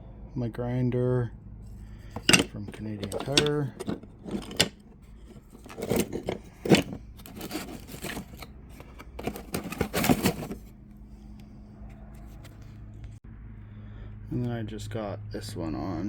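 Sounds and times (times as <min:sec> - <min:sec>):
packaging scraping and rustling: 0:02.1 - 0:10.7.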